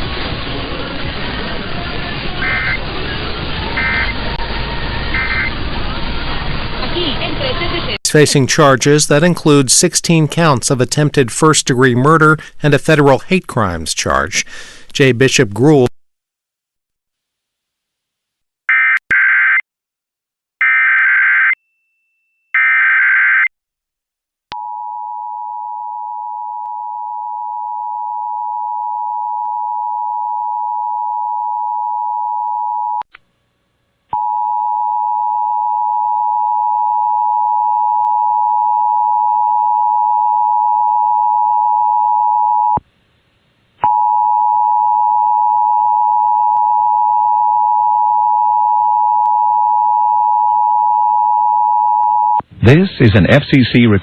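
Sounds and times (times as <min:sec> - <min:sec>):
faint hum: 0:00.0 - 0:15.0
two-tone attention signal: 0:02.4 - 0:02.8, 0:03.8 - 0:04.2, 0:05.2 - 0:05.5.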